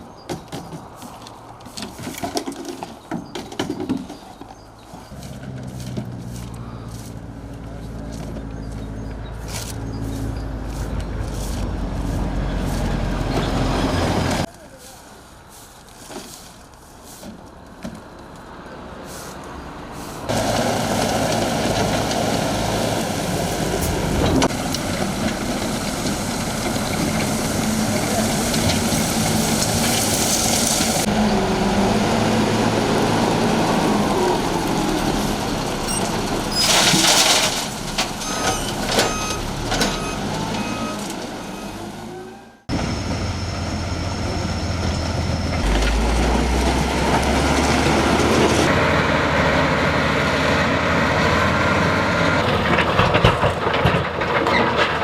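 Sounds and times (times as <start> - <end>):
heavy work vehicles running: 0.0 - 55.0
reversing alarm beeps: 38.2 - 42.6.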